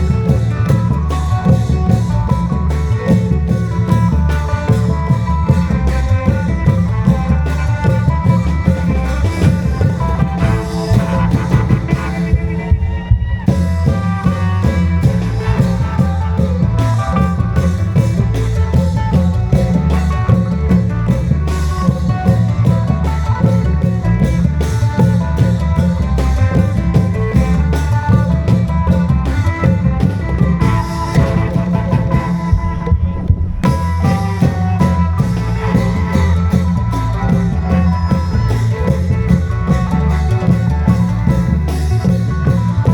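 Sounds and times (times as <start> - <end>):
drum band playing: 0.0 - 42.9.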